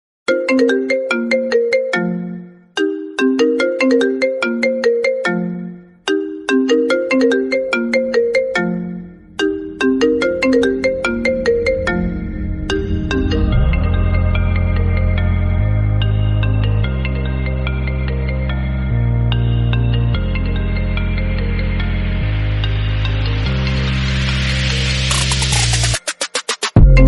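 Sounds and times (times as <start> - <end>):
phone ringtone melody: 0.3 - 18.9
low bass tone: 8.8 - 24.8.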